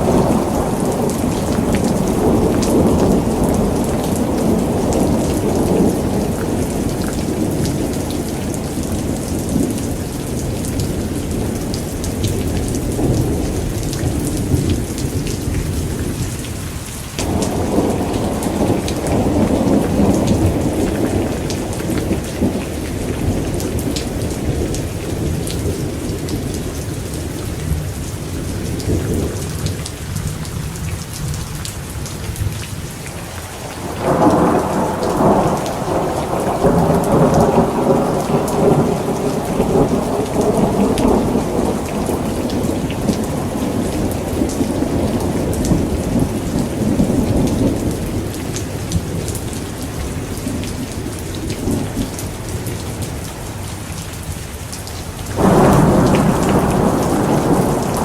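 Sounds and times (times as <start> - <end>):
low thunder rumbling: 0.0 - 16.5, 17.2 - 31.4, 32.0 - 53.7, 55.4 - 58.0
steady rain: 0.0 - 58.0.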